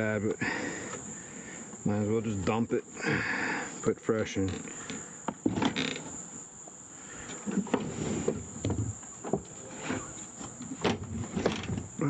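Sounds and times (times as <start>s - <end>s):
lawn mower knocks and clunks: 5.3s - 5.8s, 10.6s - 12.0s.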